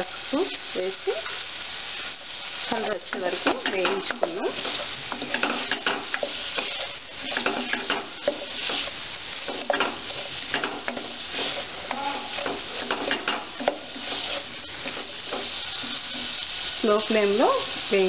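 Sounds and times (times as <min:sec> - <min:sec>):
onions sizzling in oil: 0:00.0 - 0:18.0
utensil scraping a pan: 0:02.7 - 0:16.5.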